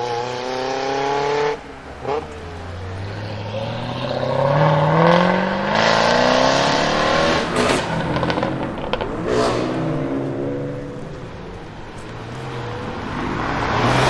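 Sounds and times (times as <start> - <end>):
exhaust crackles: 0.0 - 14.0
sports car engine accelerating: 0.0 - 14.0.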